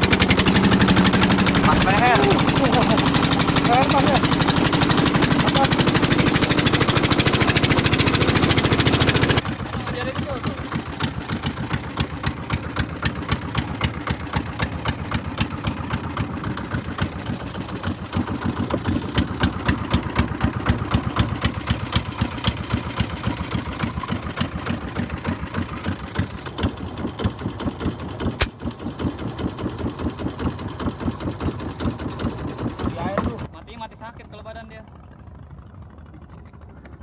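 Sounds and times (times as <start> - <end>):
small boat engine running: 0.0 - 33.5, 34.2 - 37.0
sharp crack: 28.4 - 28.8.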